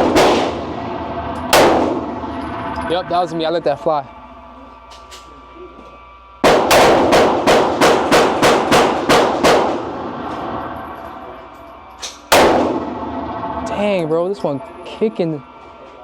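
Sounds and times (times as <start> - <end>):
gunshots echoing indoors: 0.0 - 2.4, 6.4 - 10.6, 12.0 - 13.4.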